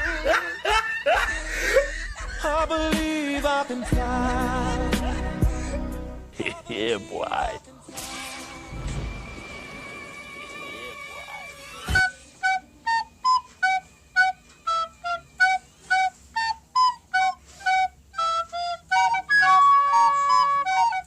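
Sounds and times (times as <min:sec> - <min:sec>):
high wind instrument tune: 0:08.0 - 0:21.0.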